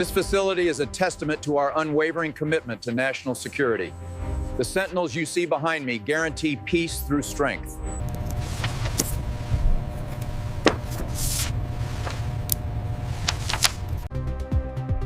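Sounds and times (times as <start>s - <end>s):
low machine hum: 8.0s - 14.1s.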